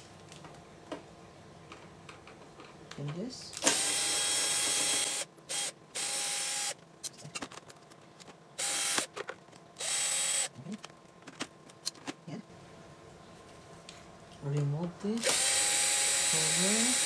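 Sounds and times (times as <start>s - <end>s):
electric screwdriver whining: 3.6s - 6.8s, 8.6s - 9.1s, 9.8s - 10.5s, 15.2s - 17.0s
clicks and knocks of parts: 7.0s - 9.7s, 10.8s - 12.2s.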